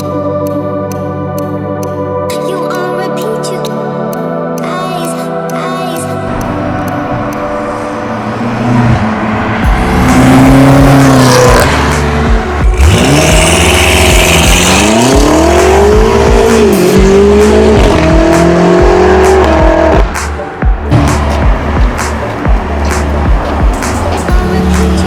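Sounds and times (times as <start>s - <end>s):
car engine accelerating hard: 6.2s - 25.0s.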